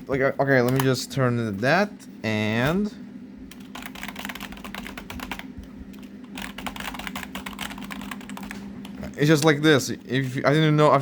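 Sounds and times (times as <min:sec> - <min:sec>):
fast keyboard typing: 0:03.5 - 0:08.6.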